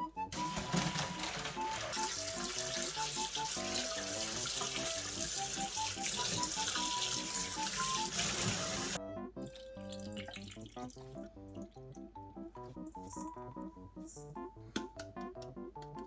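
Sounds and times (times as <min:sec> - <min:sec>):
background music with plucky melody: 0:00.0 - 0:16.0
water running from a tap: 0:00.4 - 0:11.9.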